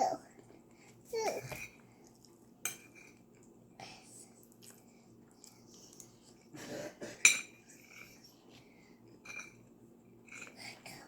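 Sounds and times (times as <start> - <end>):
quiet chewing: 1.6 - 3.6, 4.2 - 6.6.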